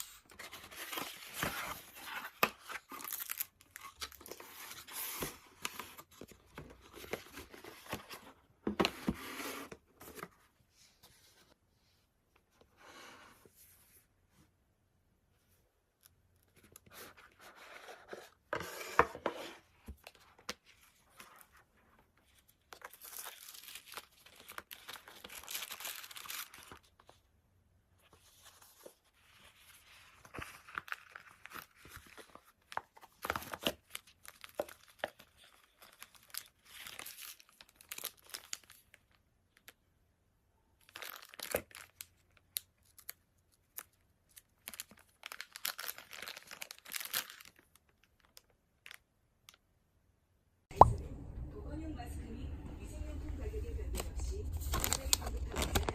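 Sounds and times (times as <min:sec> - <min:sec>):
wrapping material tearing and crinkling: 0:00.7 - 0:05.1, 0:22.8 - 0:26.9, 0:33.2 - 0:39.1, 0:40.8 - 0:49.0, 0:54.5 - 0:55.9.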